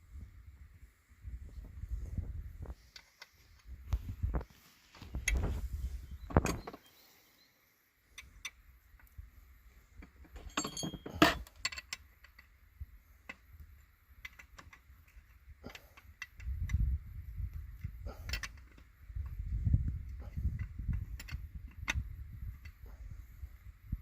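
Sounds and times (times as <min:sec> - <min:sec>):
metallic clinks and knocks: 0:10.0 - 0:12.5.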